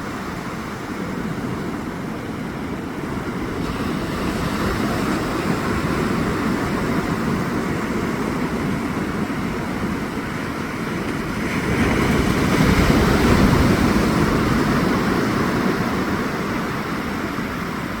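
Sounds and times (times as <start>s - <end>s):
ocean surf rushing: 0.0s - 18.0s
wind on microphone: 0.0s - 18.0s.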